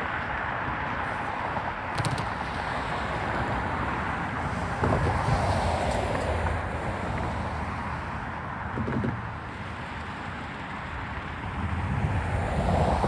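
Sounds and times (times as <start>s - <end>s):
freight train rumbling on rails: 2.6s - 8.2s.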